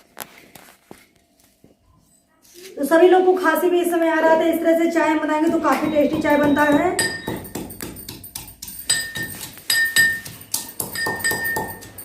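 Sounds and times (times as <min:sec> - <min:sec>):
pestle pounding in a mortar: 0:05.5 - 0:12.0.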